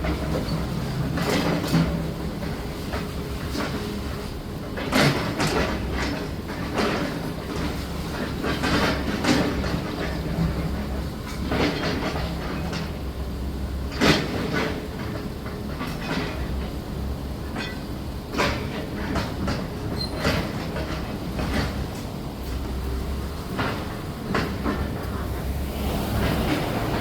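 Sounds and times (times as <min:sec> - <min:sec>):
low engine hum: 0:24.3 - 0:27.0.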